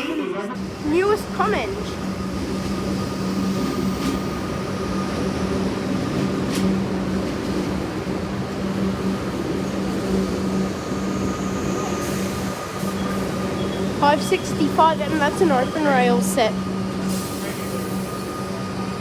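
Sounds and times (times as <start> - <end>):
electric train humming: 0.0 - 19.0.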